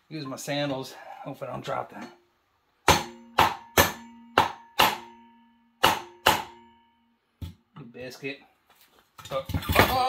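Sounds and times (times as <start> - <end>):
metal-on-metal strikes ringing: 2.9 - 7.2.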